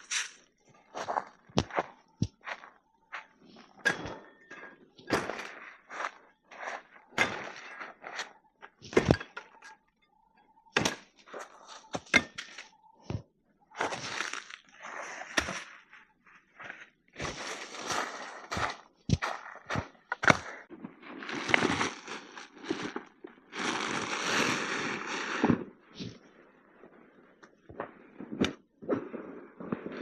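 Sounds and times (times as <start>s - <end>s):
crunchy scraping: 0.0s - 9.8s, 13.8s - 26.2s.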